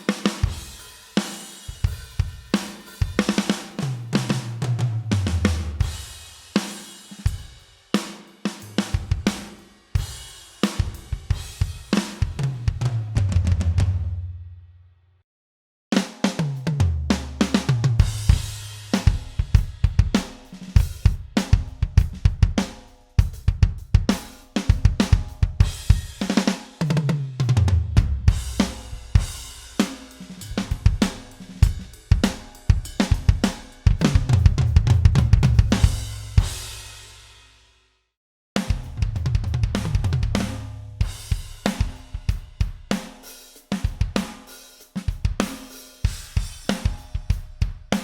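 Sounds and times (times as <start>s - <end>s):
electronic drum kit groove: 0.0s - 14.0s, 16.3s - 37.1s, 38.6s - 48.0s
low drum fills: 10.8s - 14.2s, 16.4s - 37.0s, 38.6s - 43.0s.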